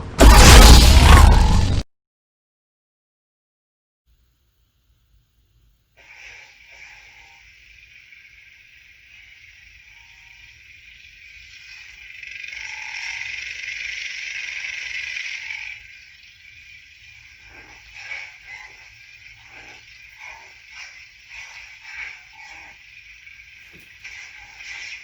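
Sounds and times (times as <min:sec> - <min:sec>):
crackling lightsaber hum: 0:05.5 - 0:25.0.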